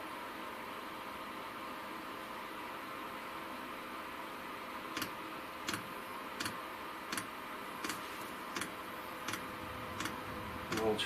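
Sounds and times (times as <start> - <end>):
heater fan hiss: 0.0 - 11.0.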